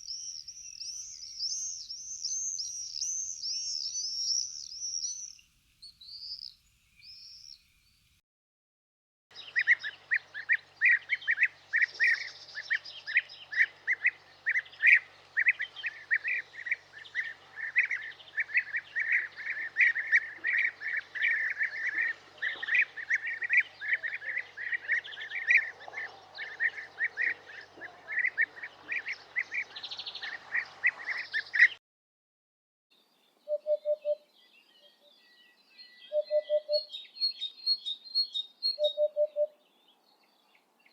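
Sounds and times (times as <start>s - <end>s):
bird chattering call: 9.4s - 31.8s.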